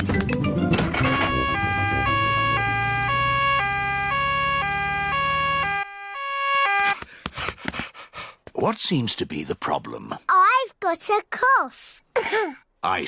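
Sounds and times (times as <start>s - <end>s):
two-tone siren: 0.8s - 7.0s.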